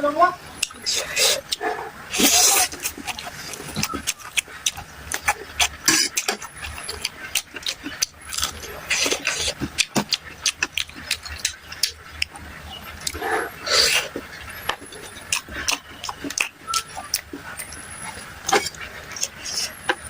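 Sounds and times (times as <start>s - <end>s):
wet chewing clicks: 0.6s - 20.0s
slurp: 0.9s - 4.2s
mouth smacks: 13.0s - 17.7s.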